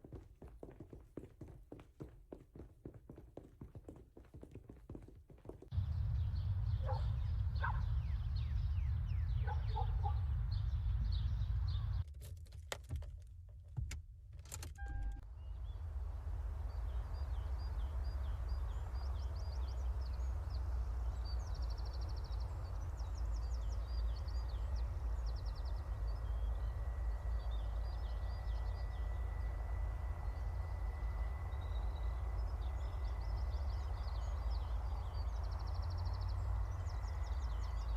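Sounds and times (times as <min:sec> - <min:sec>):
small birds chirping: 0:00.0 - 0:12.0
steady low rumble: 0:05.7 - 0:12.0.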